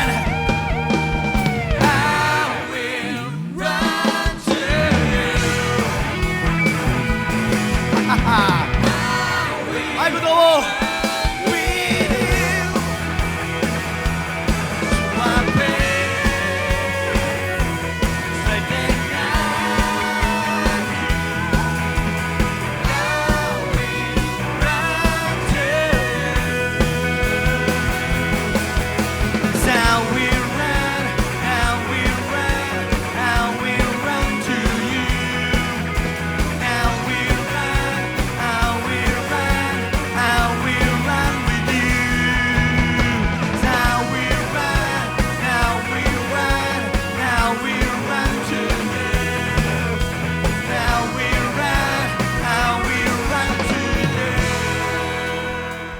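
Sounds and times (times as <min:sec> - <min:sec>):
bending melodic lead: 0:00.0 - 0:02.3
bass line: 0:00.0 - 0:55.9
drums beating: 0:00.0 - 0:55.9
rock band playing: 0:00.0 - 0:55.9.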